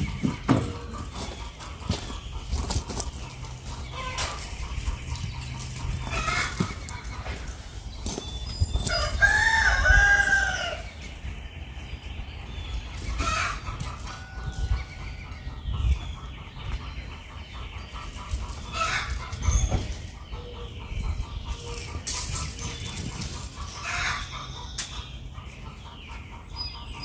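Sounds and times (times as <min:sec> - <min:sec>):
rooster crowing: 0:08.9 - 0:10.9.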